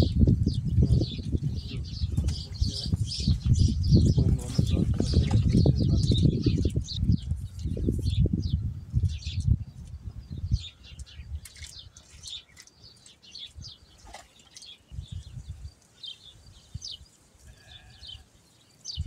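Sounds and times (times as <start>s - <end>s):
wind gusts rumbling: 0.0s - 12.0s
small birds chirping: 0.0s - 19.0s.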